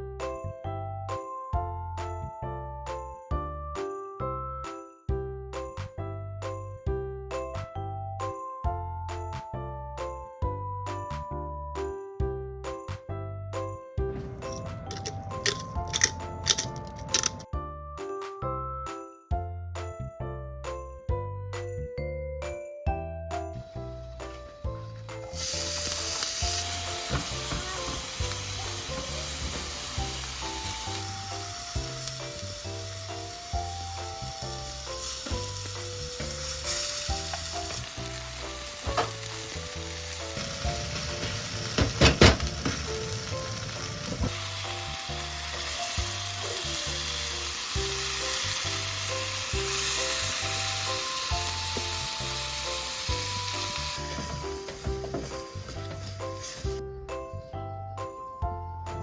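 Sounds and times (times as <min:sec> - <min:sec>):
background music with bass: 0:00.0 - 0:59.0
food sizzling in a pan: 0:25.1 - 0:56.8.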